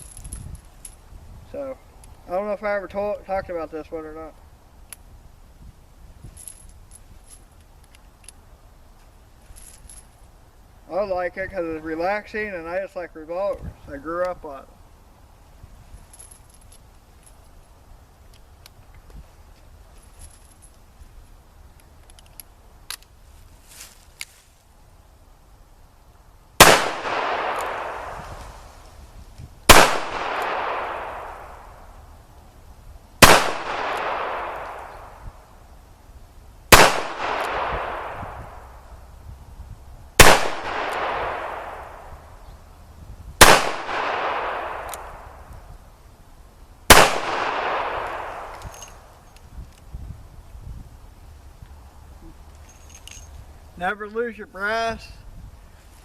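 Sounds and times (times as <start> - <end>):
revolver gunshots with echo: 26.6 - 28.4, 29.7 - 31.9, 33.2 - 35.2, 36.7 - 38.7, 40.2 - 42.2, 43.4 - 45.5, 46.9 - 48.6.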